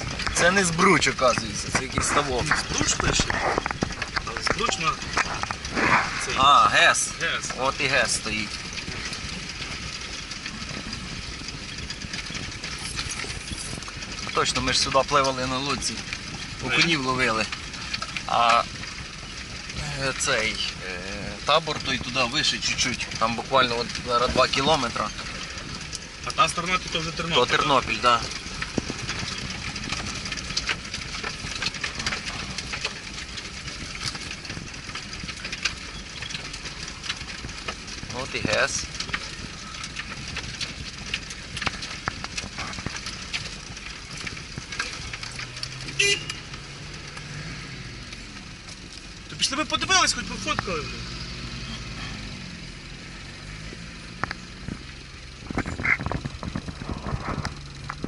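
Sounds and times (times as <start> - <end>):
vehicle engine rumbling: 0.0 - 58.0
short knocks and rattles: 21.4 - 47.3.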